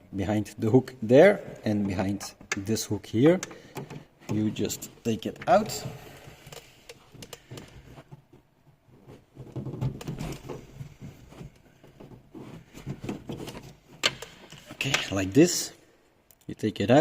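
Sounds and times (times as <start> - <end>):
plastic clicks and rustling: 6.4 - 8.4.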